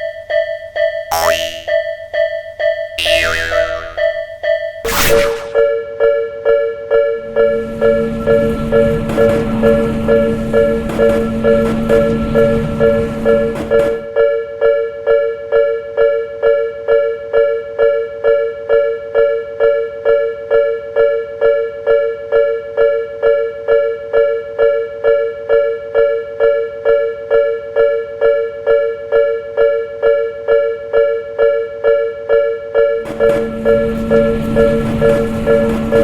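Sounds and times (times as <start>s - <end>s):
level crossing alarm clanging: 7.2s - 14.1s, 33.0s - 36.0s.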